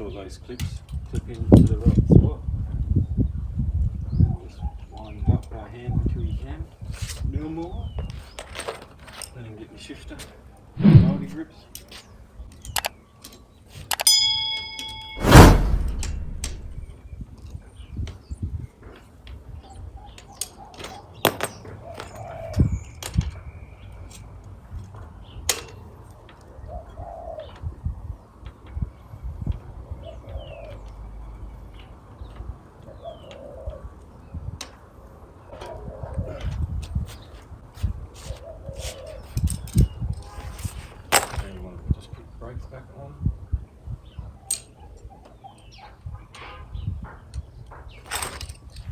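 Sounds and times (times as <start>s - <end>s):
loud thump with low rumble: 10.8s - 11.4s, 15.2s - 16.9s
ringing metallic clang: 14.0s - 16.9s.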